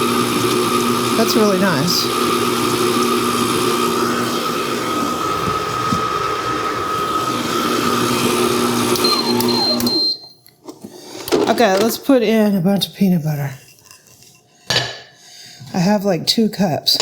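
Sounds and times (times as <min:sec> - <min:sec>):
stand mixer motor whining: 0:00.0 - 0:10.1.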